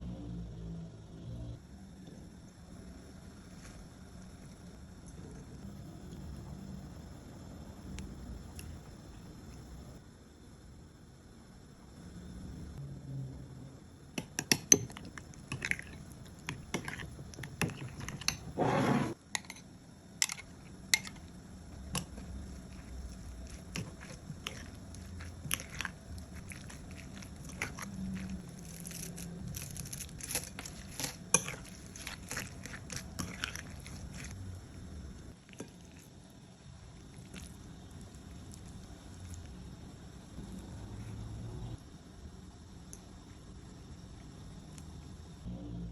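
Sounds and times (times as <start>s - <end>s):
utensils clicking and tapping: 14.2s - 18.4s.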